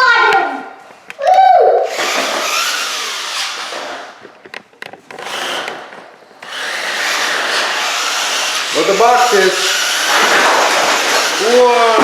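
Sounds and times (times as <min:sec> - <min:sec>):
toy truck electric motor running: 0:01.9 - 0:04.2, 0:05.2 - 0:12.0.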